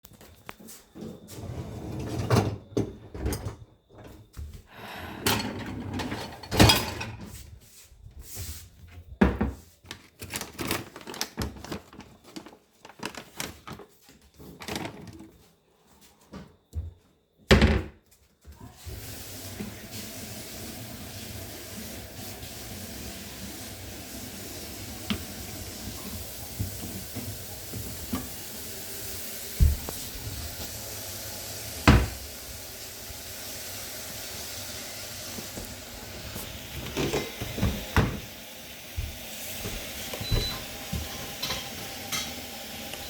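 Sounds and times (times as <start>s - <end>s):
dishwasher door and racks clattering: 1.0s - 4.4s, 5.2s - 7.4s, 14.6s - 15.3s, 25.0s - 28.4s, 31.8s - 32.3s, 35.3s - 38.3s, 39.0s - 42.5s.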